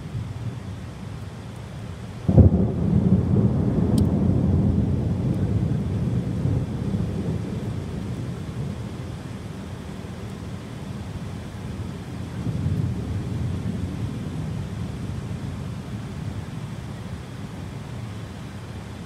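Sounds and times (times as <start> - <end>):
heavy rain: 0.0 - 19.0
thunderclap rolling into rumble: 2.3 - 8.8.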